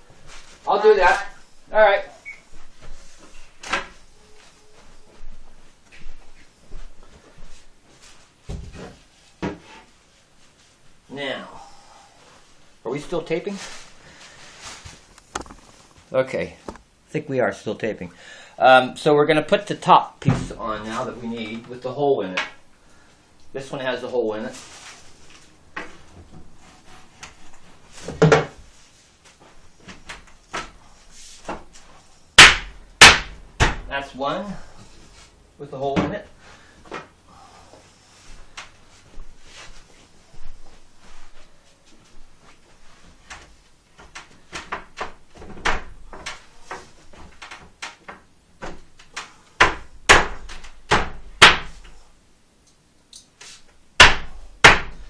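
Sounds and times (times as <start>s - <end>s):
wooden bed parts knocking: 28.0s - 28.6s, 32.4s - 33.9s, 43.2s - 51.9s, 54.0s - 55.0s
loud wooden knock: 32.4s - 33.9s, 54.0s - 55.0s.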